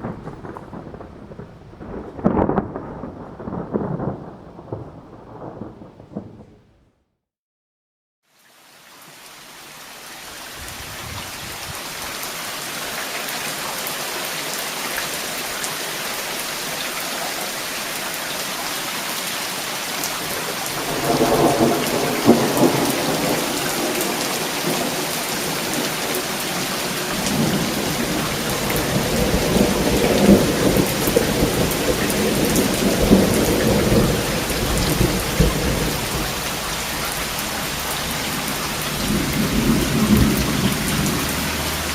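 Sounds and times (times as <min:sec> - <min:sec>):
heavy rain: 0:00.0 - 0:06.8, 0:08.3 - 0:41.9
rolling thunder: 0:00.0 - 0:07.1, 0:20.1 - 0:41.9.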